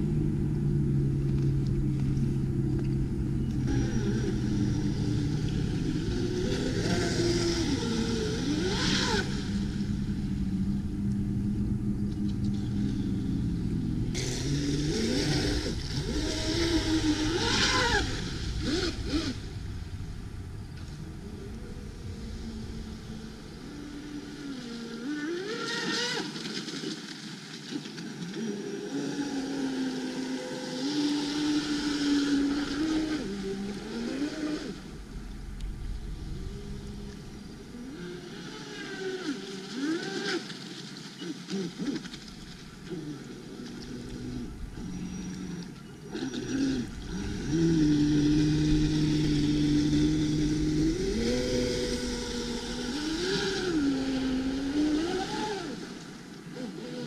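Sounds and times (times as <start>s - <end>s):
steady hiss: 0.0s - 26.4s, 29.1s - 39.8s
toy boat motor running: 3.5s - 11.4s, 13.7s - 19.4s, 23.7s - 26.9s, 28.4s - 34.7s, 37.8s - 40.6s, 42.9s - 55.9s, 56.5s - 57.0s.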